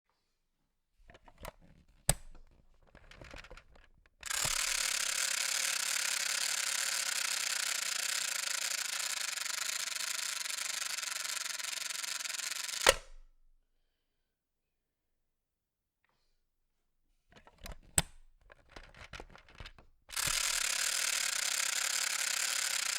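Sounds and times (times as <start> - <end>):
toy toaster rasping whir: 2.1 - 13.1, 18.6 - 22.9
toy toaster plastic clicks: 2.1 - 13.2, 17.4 - 22.9.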